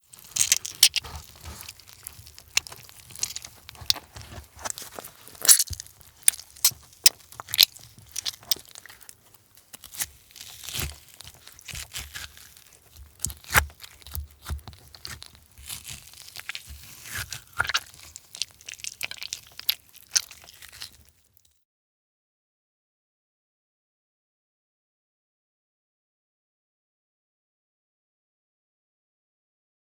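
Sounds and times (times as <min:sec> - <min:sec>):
tearing sounds: 0:00.1 - 0:21.1
wet squishes: 0:00.2 - 0:21.1.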